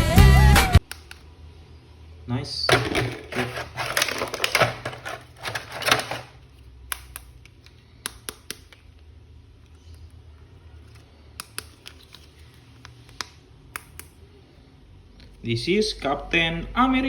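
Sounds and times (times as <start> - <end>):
plastic packaging crinkling: 2.7 - 6.4.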